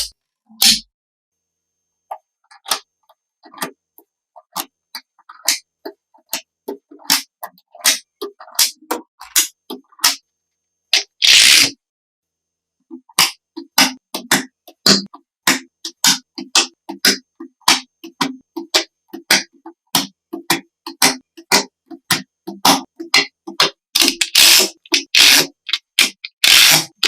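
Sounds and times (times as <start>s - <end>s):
sharp clicks and taps: 12.9s - 27.0s.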